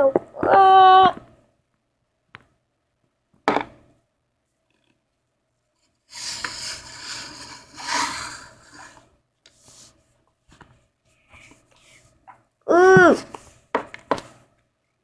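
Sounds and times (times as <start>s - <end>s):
rustling and scraping: 5.8s - 12.4s.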